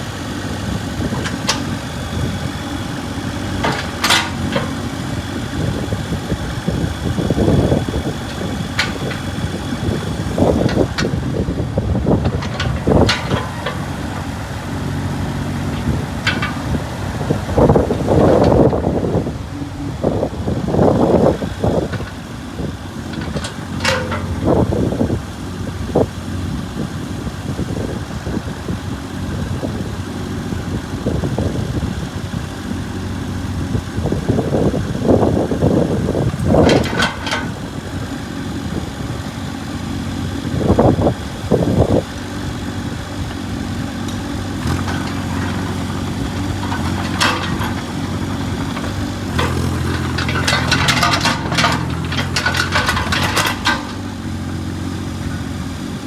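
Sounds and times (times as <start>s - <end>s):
excavator diesel engine running: 0.0s - 56.0s
sharp metallic clanks: 23.1s - 24.6s, 36.5s - 37.6s, 44.6s - 54.4s.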